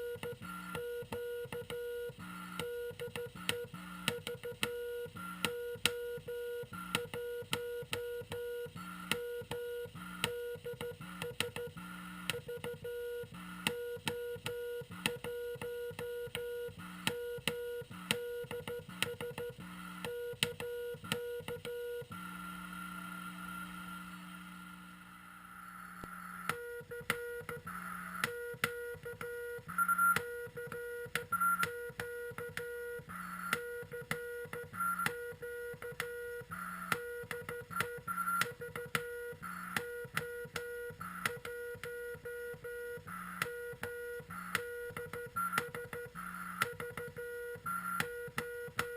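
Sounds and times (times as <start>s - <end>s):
radio hum and hiss: 21.8s - 48.9s
morse code tone: 26.6s - 48.9s.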